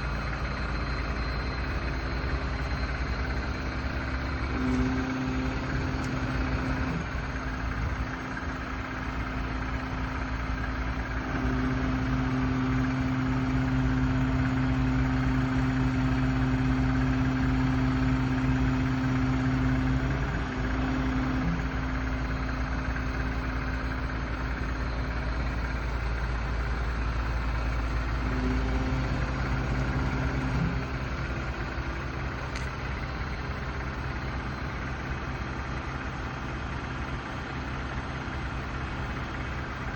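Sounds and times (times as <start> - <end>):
engine idling: 0.0 - 39.9
low droning hum: 1.0 - 9.2, 27.7 - 34.8.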